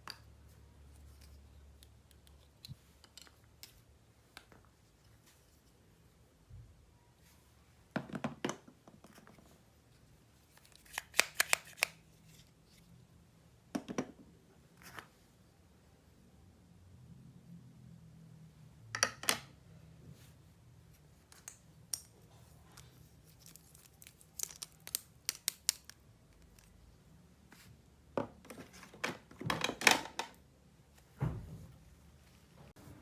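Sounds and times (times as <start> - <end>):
plastic and cardboard crinkling: 22.6 - 26.7.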